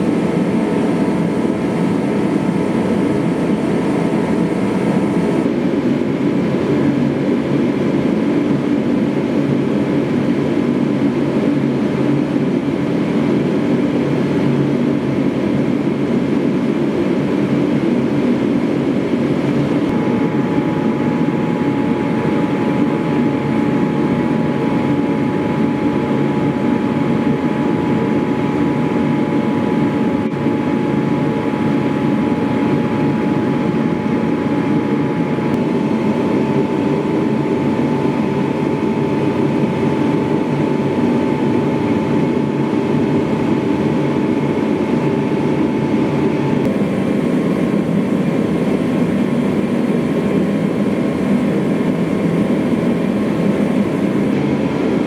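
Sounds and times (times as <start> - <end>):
faint whine: 0.0 - 5.5, 46.4 - 55.0
machine running: 0.0 - 5.5, 46.6 - 54.9.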